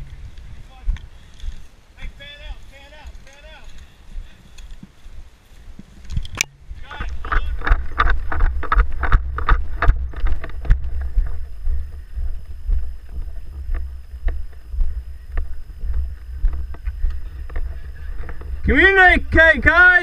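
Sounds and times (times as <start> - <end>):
low rumble on microphone: 4.1 - 19.8.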